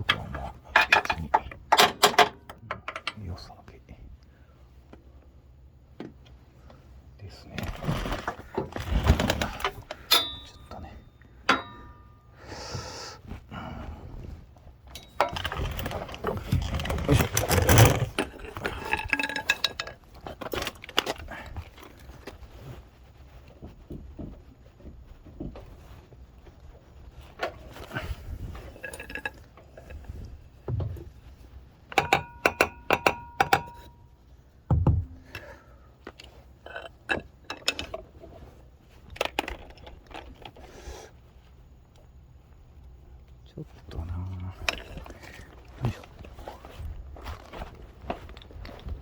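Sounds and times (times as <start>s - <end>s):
metal objects clinking: 9.6s - 10.8s, 14.9s - 20.8s.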